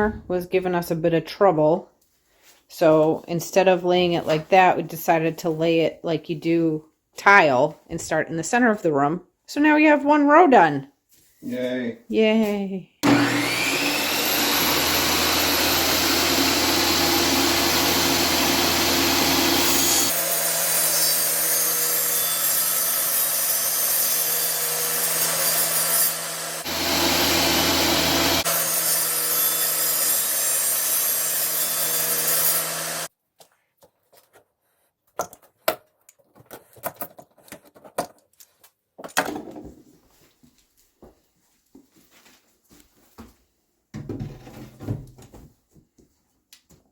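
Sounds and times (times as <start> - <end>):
power saw cutting flooring: 13.0 - 33.1.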